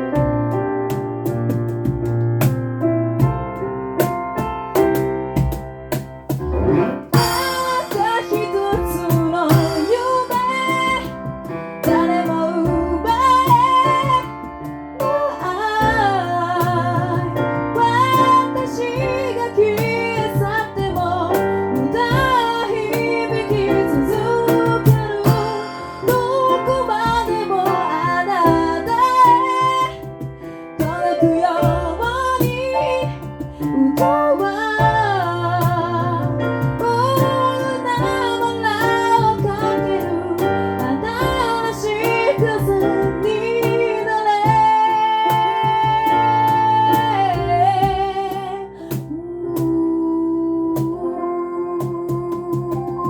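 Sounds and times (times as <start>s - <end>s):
sung harmonies: 6.4s - 53.0s
female lead voice singing: 11.8s - 14.3s, 15.0s - 30.2s, 30.8s - 53.0s.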